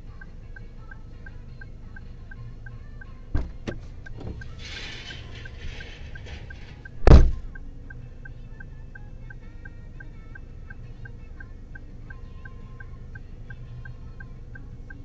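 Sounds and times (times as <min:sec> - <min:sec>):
steady fine ticking: 0:00.0 - 0:15.0
car door shutting thump: 0:03.3 - 0:04.4, 0:07.0 - 0:07.5
car door opening: 0:03.3 - 0:07.6.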